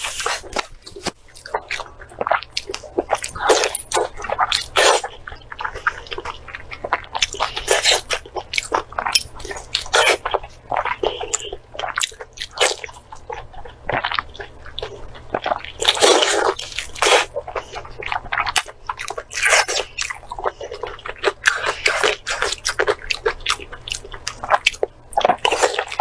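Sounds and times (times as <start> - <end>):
person chewing food: 0.0 - 26.0.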